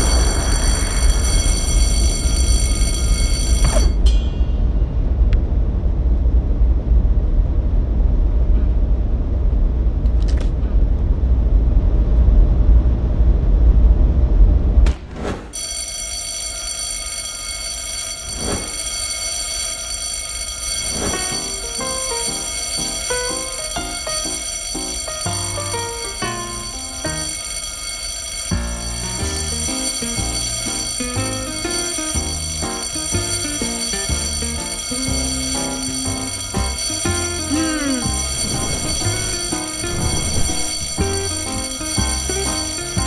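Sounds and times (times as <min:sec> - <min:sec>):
high-pitched electronic ringing: 0:00.0 - 0:04.7, 0:15.6 - 0:43.0
heavy low rumble: 0:00.0 - 0:14.9.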